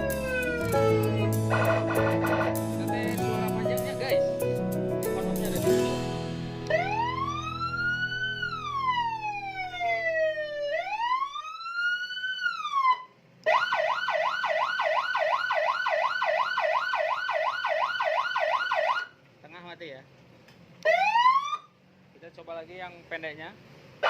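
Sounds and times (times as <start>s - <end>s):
siren wail: 0.0s - 2.5s, 6.7s - 19.1s, 20.8s - 21.8s
siren warbling yelp: 0.0s - 2.6s, 6.7s - 19.1s, 20.9s - 21.7s.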